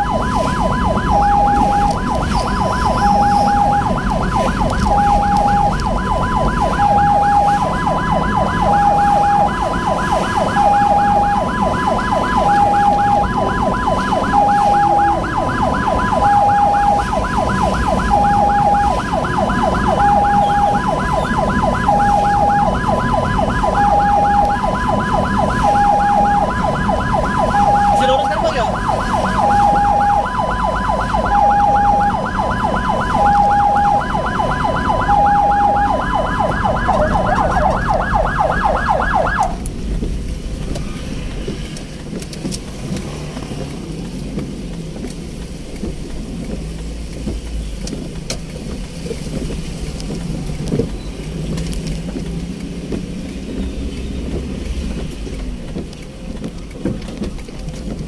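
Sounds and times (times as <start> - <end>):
ambulance siren: 0.0 - 39.8
vehicle and road rumble: 0.0 - 58.0.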